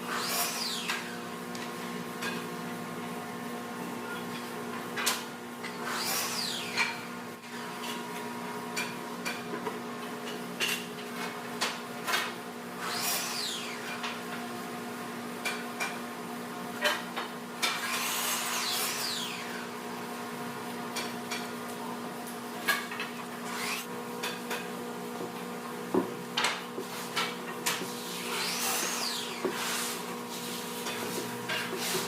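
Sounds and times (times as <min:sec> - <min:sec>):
power tool whining: 0:00.0 - 0:01.2, 0:05.8 - 0:07.8, 0:12.8 - 0:14.0, 0:17.6 - 0:19.7, 0:23.4 - 0:23.9, 0:28.1 - 0:30.0
knocks of wood and tools: 0:24.2 - 0:27.9.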